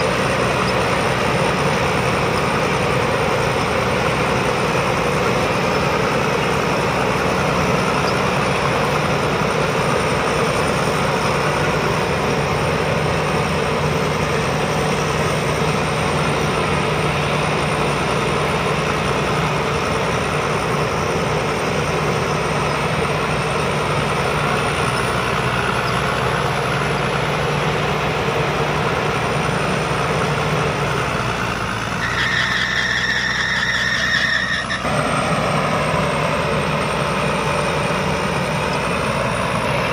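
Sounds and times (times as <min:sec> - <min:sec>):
combine harvester diesel engine: 0:00.0 - 0:39.9.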